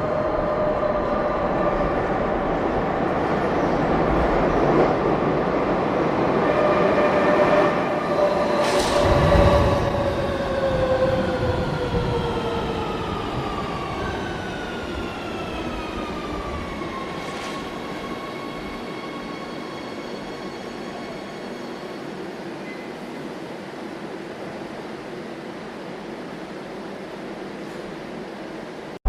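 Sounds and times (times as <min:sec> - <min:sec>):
train rumble: 0:00.0 - 0:18.9.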